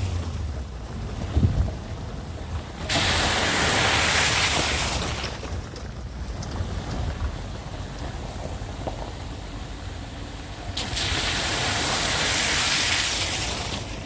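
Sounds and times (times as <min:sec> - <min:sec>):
car engine rumble: 0:00.0 - 0:14.0
water spray hissing: 0:10.8 - 0:14.0.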